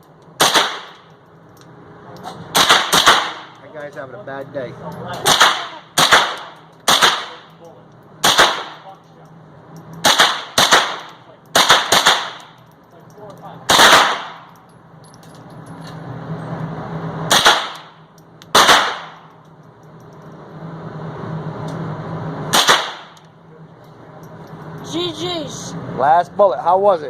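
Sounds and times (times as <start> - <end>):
gunshots: 0.4 - 1.1, 2.5 - 3.6, 5.2 - 7.5, 8.2 - 8.9, 10.0 - 12.6, 13.7 - 14.5, 17.3 - 19.2, 22.5 - 23.2.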